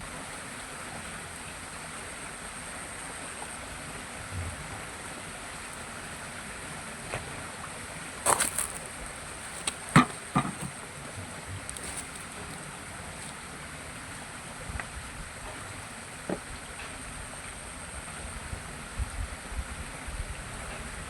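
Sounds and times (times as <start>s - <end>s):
outdoor background hiss: 0.0s - 21.0s
sharp knocks: 9.7s - 10.8s.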